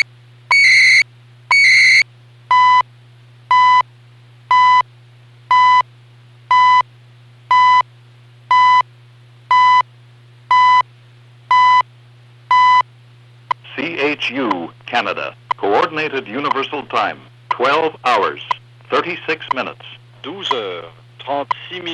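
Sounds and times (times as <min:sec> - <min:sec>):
time signal beeps: 0:00.0 - 0:02.8, 0:03.5 - 0:03.8, 0:04.5 - 0:04.8, 0:05.5 - 0:05.8, 0:06.5 - 0:06.8, 0:07.5 - 0:07.8, 0:08.5 - 0:08.8, 0:09.5 - 0:09.8, 0:10.5 - 0:10.8, 0:11.5 - 0:11.8, 0:12.5 - 0:12.8
constant low hum: 0:00.0 - 0:21.9.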